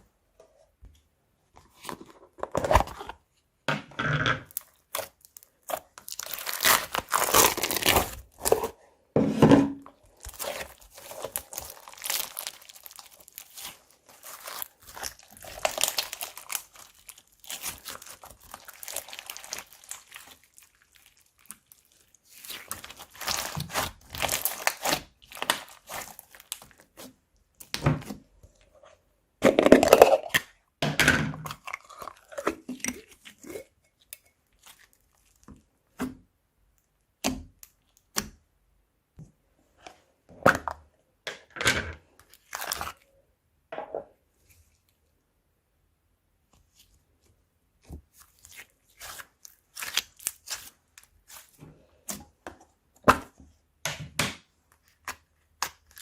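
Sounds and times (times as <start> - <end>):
crunchy slime crackling: 4.5 - 8.7, 10.0 - 27.8, 48.1 - 52.2.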